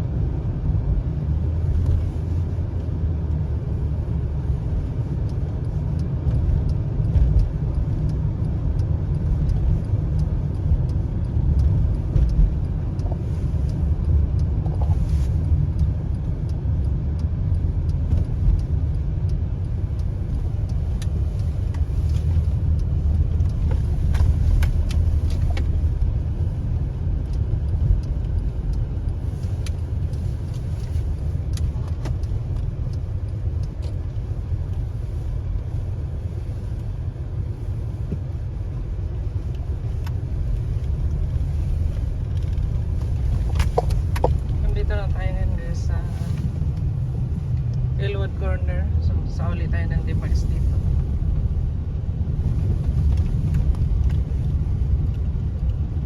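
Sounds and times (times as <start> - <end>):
car road and engine rumble: 0.0 - 56.0.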